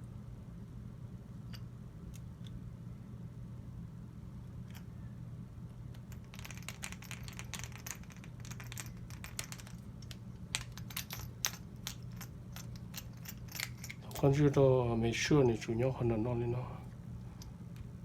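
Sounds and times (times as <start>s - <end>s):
steady low hum: 0.0s - 18.0s
small metal parts clicking: 4.6s - 4.9s, 5.9s - 14.5s.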